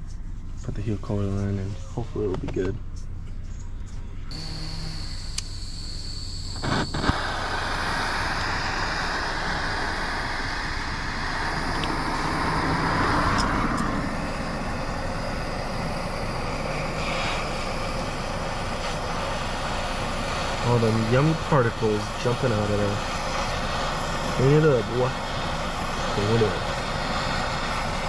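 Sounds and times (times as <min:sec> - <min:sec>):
gas torch igniter clicks: 0:04.3 - 0:12.4, 0:13.0 - 0:14.1
gas torch hissing: 0:04.3 - 0:28.0.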